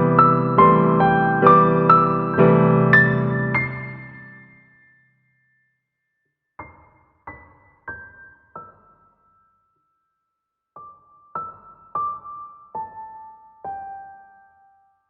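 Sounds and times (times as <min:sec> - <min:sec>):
slow piano notes: 0:00.0 - 0:05.0, 0:10.8 - 0:15.0.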